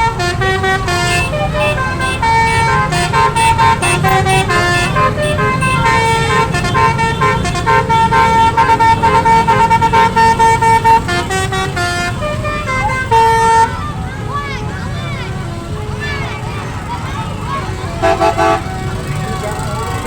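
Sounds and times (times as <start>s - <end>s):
multi-tone horns playing a tune: 0.0s - 14.0s, 17.3s - 19.2s.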